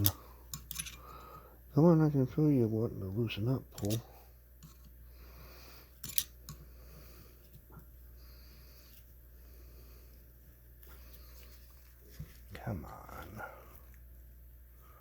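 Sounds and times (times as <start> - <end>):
quiet steady hum: 0.0 - 15.0.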